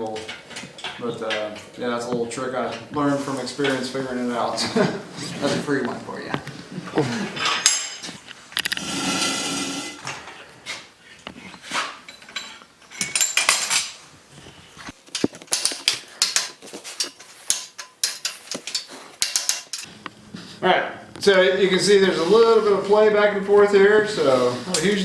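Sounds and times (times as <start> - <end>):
steel tools clinking and clanking: 0.0 - 6.4, 7.3 - 8.8, 11.8 - 14.0, 14.9 - 19.9.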